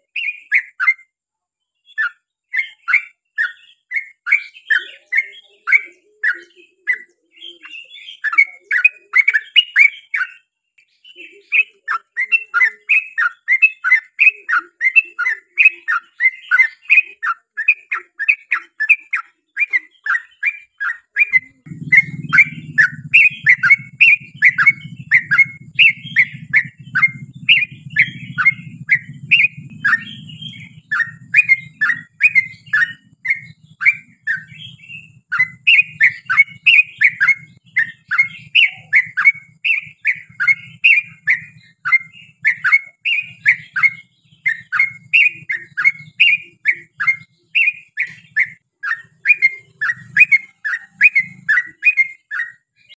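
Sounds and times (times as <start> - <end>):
bird chattering song: 0.0 - 1.1, 1.7 - 52.9
low steady hum: 21.6 - 35.7.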